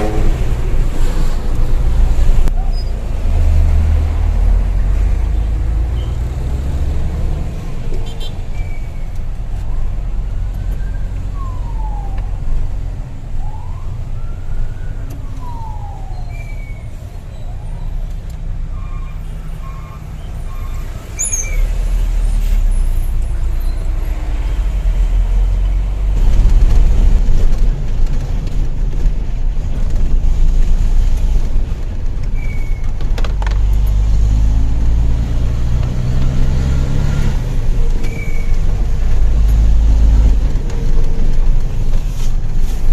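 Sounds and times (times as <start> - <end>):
siren-like sweeping tones: 10.8 - 17.9.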